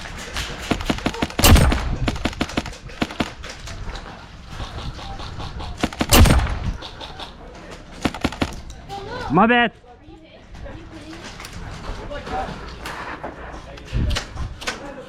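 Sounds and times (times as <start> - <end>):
airsoft guns firing: 0.4 - 3.6, 5.8 - 6.9, 7.9 - 8.7
heavy gun bursts: 0.5 - 3.5, 5.7 - 7.0, 7.9 - 8.6.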